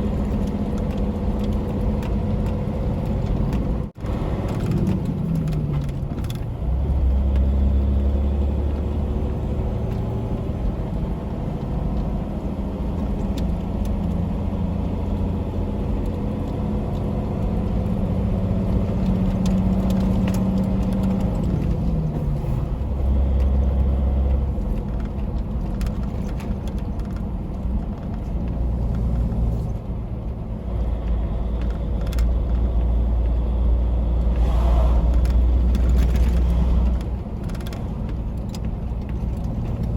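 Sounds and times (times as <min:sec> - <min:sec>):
truck diesel engine droning: 0:00.0 - 0:26.3, 0:27.3 - 0:39.9.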